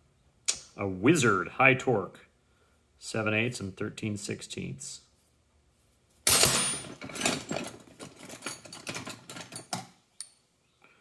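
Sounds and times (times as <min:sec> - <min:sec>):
metal hand tools clattering: 0:06.3 - 0:09.9.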